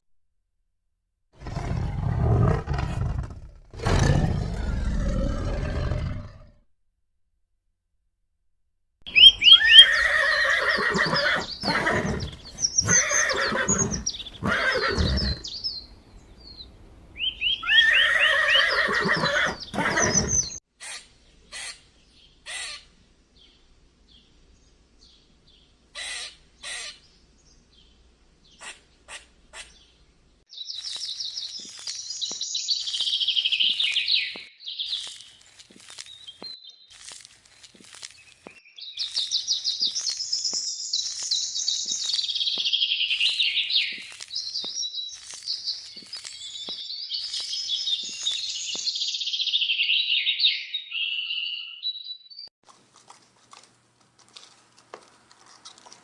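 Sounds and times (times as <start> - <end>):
loud pitched animal calls: 9.1 - 15.4, 17.6 - 21.8.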